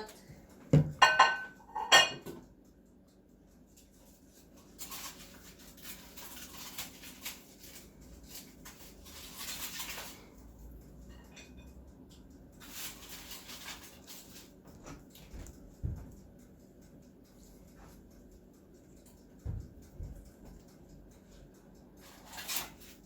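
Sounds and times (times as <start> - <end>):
small tools scraping and clicking: 3.8 - 15.3, 22.0 - 23.0.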